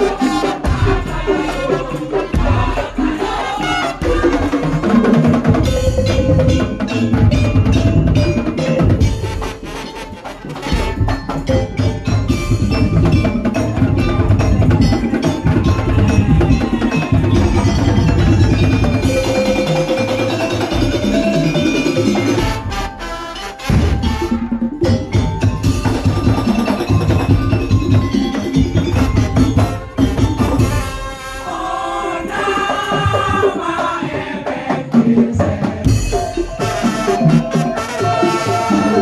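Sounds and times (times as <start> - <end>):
percussion ensemble playing: 0.0 - 39.0
wooden slit drums: 0.0 - 39.0
tuned metal percussion: 4.7 - 31.0.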